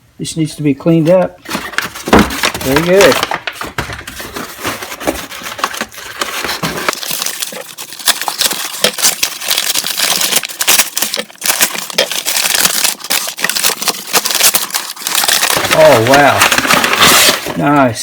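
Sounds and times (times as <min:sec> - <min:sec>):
packing wrapping crinkling: 0:01.0 - 0:18.0.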